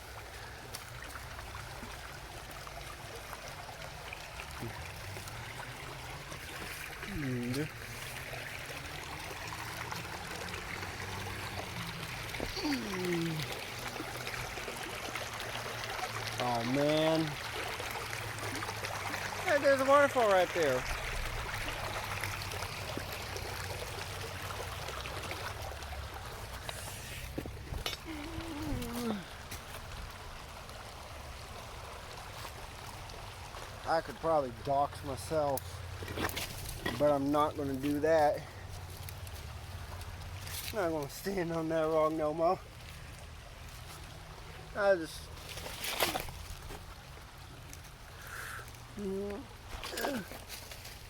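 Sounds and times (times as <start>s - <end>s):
creek water running over rocks: 0.0s - 51.0s.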